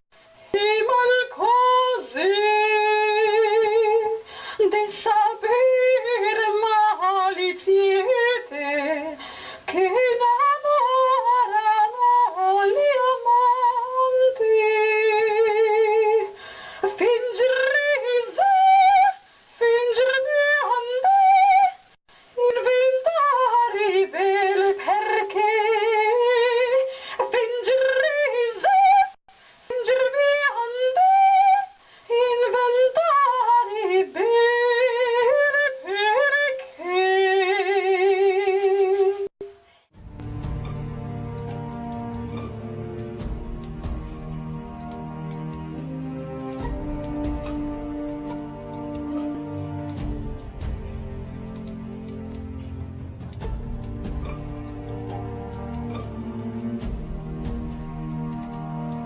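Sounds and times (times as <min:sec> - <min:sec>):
woman singing wordless notes: 0:00.5 - 0:21.8, 0:22.4 - 0:39.6
woman breathing: 0:04.2 - 0:04.6, 0:09.2 - 0:09.7, 0:16.3 - 0:16.9, 0:19.2 - 0:19.6, 0:26.9 - 0:27.2, 0:29.3 - 0:29.7, 0:31.8 - 0:32.1, 0:39.5 - 0:40.2.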